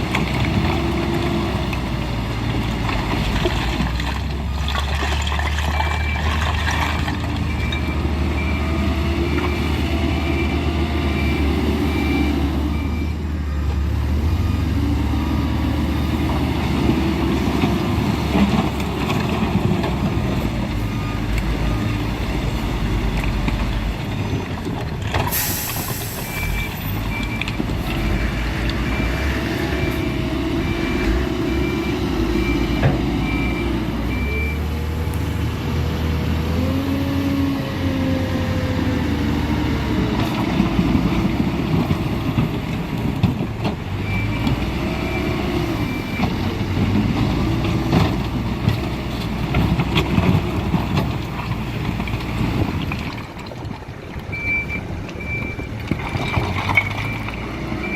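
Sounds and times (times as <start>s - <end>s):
diesel engine working: 0.0s - 57.9s
reversing alarm beeping: 7.5s - 16.0s, 25.5s - 34.7s, 54.3s - 55.8s, 56.8s - 57.9s
short sharp hiss: 25.3s - 26.4s.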